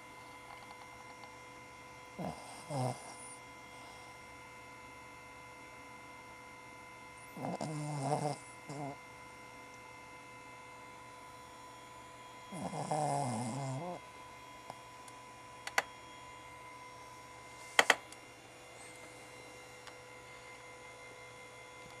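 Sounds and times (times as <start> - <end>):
dog snoring: 2.1 - 4.2, 7.2 - 9.0, 12.5 - 14.1
sharp clicks: 15.7 - 15.9.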